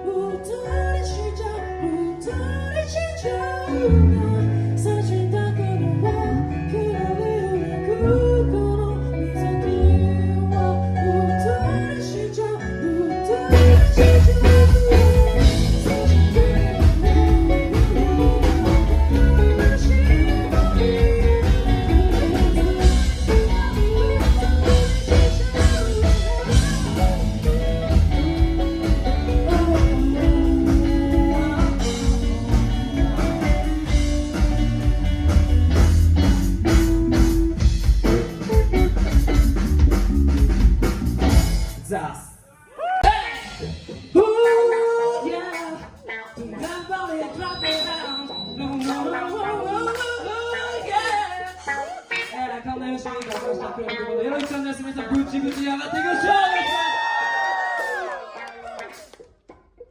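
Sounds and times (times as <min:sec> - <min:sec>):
funk rock band playing: 0:09.4 - 0:42.1, 0:42.8 - 0:59.4.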